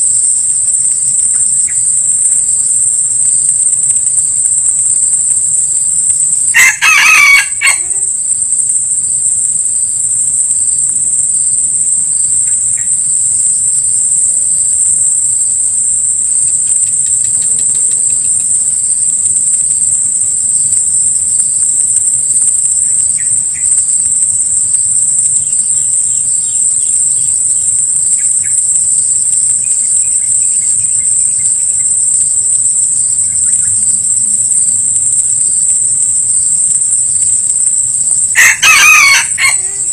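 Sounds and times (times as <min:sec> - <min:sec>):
high-pitched insect drone: 0:00.0 - 0:39.9
junglefowl crowing: 0:06.5 - 0:08.1, 0:38.3 - 0:39.9
faint bird chirps: 0:10.5 - 0:39.9.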